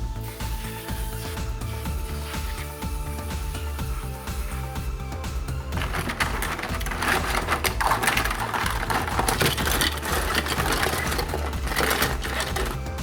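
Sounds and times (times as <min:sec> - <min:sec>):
background music with low bass: 0:00.0 - 0:13.0
rapid rattling and scraping: 0:05.8 - 0:13.0.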